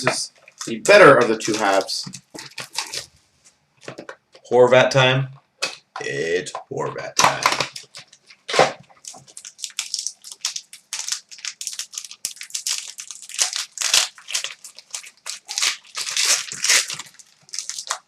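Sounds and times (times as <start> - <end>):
wrapping tearing and crinkling: 0.0 - 3.2, 7.3 - 18.0.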